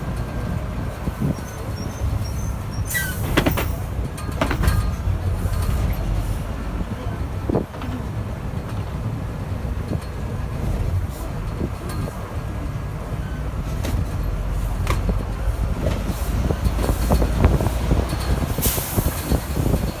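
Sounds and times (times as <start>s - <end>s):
heavy vehicles rumbling: 0.0s - 20.0s
knocks and clatters: 3.1s - 6.1s.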